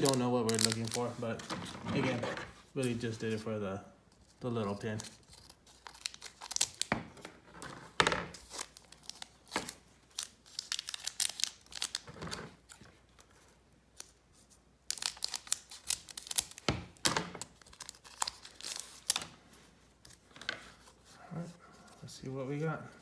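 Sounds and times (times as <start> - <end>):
foil wrapper tearing and crinkling: 0.0 - 1.2, 4.9 - 6.9, 8.4 - 12.8, 14.9 - 19.4.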